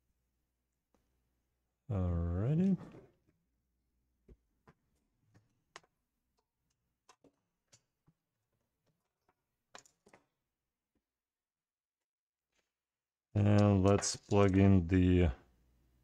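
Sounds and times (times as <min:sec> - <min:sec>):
small parts and tools clicking: 0:04.9 - 0:10.4.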